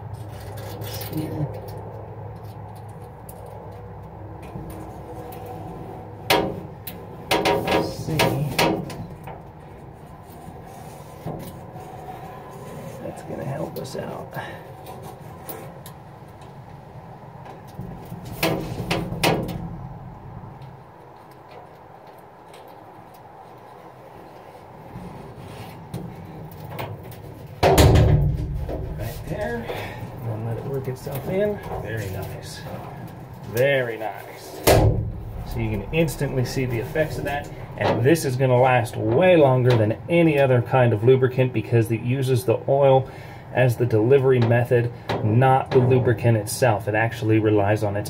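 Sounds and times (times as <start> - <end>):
metal hinge rubbing: 34.4 - 40.1
sudden loud sound: 34.6 - 38.8.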